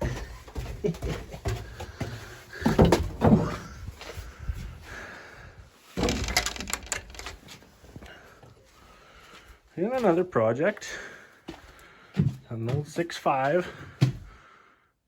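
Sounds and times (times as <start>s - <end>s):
knocks bumps and clatter: 0.0s - 4.0s, 6.0s - 7.5s.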